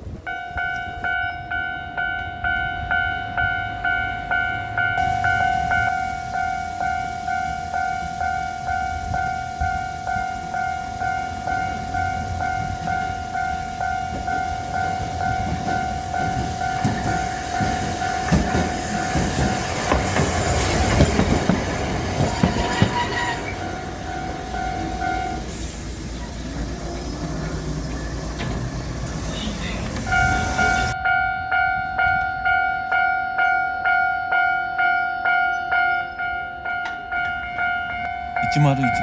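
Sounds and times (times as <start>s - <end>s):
level crossing alarm ringing: 0.3s - 19.8s, 29.3s - 39.0s
tram wheels clicking over rail joints: 8.9s - 31.0s.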